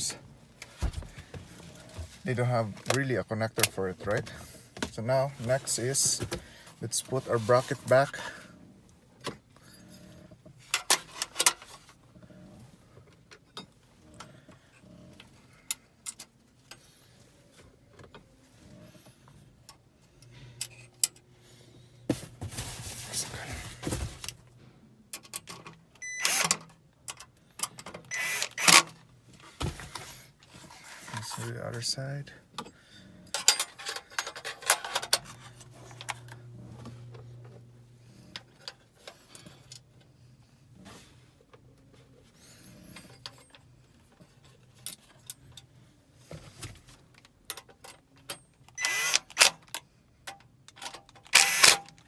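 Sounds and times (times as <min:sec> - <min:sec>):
power driver whirring: 0:20.2 - 0:22.1, 0:26.0 - 0:26.6, 0:28.1 - 0:28.8, 0:35.2 - 0:38.5, 0:48.8 - 0:49.4, 0:51.3 - 0:51.8.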